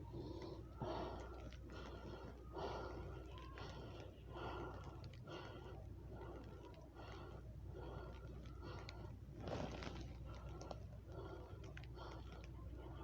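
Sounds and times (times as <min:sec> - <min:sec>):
person breathing hard: 0:00.0 - 0:13.0.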